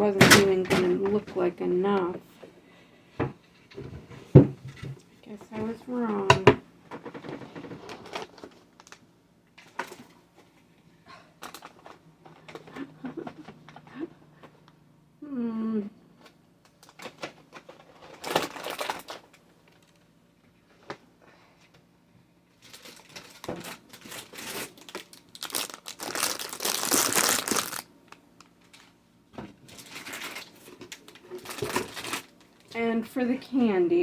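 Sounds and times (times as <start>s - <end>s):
packaging crinkling: 16.8s - 20.0s, 22.5s - 28.9s, 29.6s - 32.7s.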